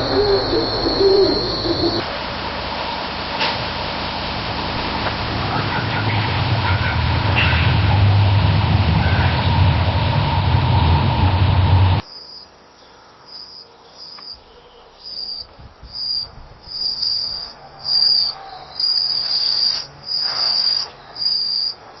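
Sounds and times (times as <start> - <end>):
crickets chirping: 0.0 - 2.1, 12.0 - 22.0
loud steady rumbling noise: 0.0 - 12.0.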